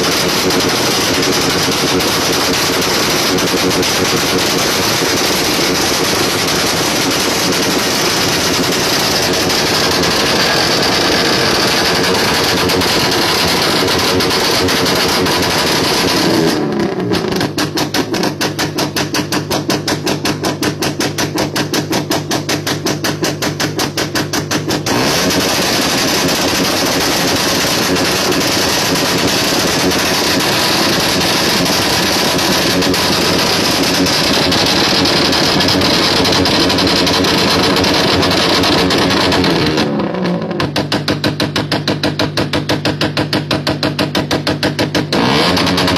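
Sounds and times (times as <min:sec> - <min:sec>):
fast pulsing beat: 0:00.0 - 0:16.6, 0:24.7 - 0:39.7
loud distorted sound system audio: 0:00.0 - 0:45.9.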